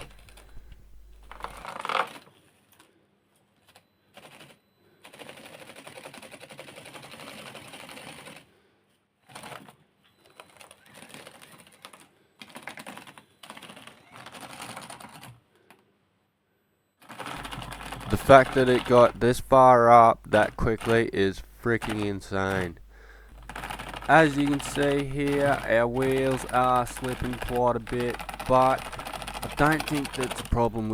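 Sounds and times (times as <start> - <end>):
toy car motor whirring: 17.3 - 30.9.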